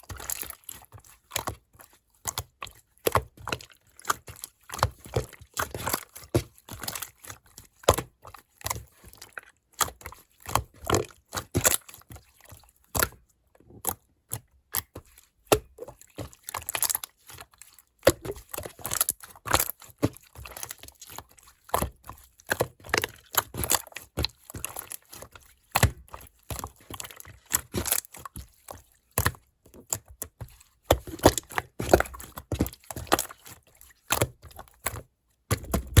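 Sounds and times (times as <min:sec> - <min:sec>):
slime squished by hand: 0:30.8 - 0:36.0.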